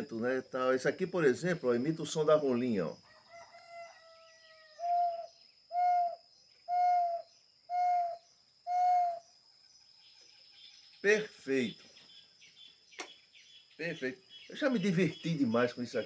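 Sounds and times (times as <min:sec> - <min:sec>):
bird-call whistle cooing: 0:03.1 - 0:09.4.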